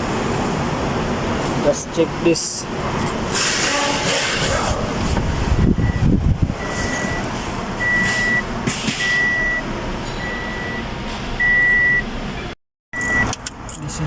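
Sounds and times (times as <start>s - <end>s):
car engine cranking: 2.7s - 12.3s, 13.0s - 14.0s
high beep: 5.8s - 7.2s, 7.8s - 9.6s, 10.2s - 12.1s, 13.0s - 13.4s.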